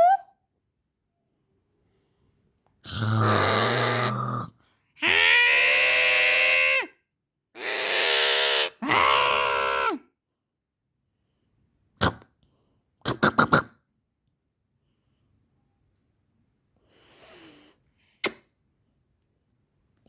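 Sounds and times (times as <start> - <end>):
parrot sneeze-like clicks: 18.2 - 18.5.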